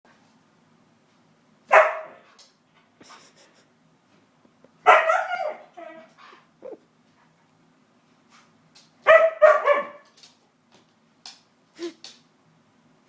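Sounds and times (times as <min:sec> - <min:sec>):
dog barking: 0:01.7 - 0:02.2, 0:04.8 - 0:05.7, 0:09.0 - 0:10.0.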